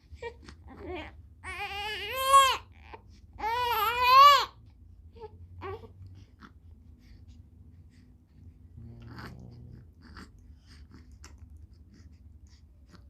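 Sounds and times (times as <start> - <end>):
baby crying and wailing: 0.7 - 4.6
baby whimpering: 8.8 - 11.4.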